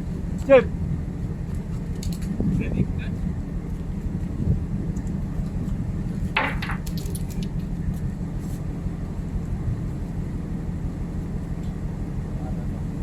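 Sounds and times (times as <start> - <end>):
ship machinery drone: 0.0 - 13.0
light clicks and clinks: 6.4 - 7.7.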